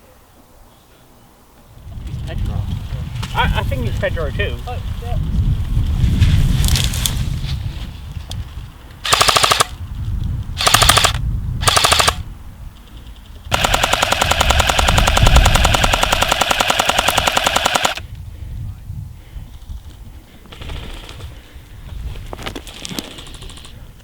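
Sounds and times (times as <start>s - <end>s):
airsoft gun firing bursts: 9.0s - 9.8s, 10.6s - 12.2s, 13.5s - 18.0s.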